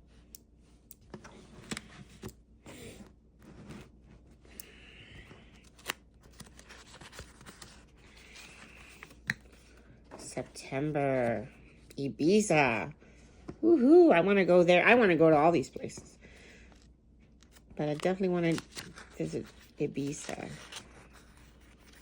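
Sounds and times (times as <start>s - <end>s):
paper pages turning: 5.2s - 11.0s, 16.7s - 22.0s.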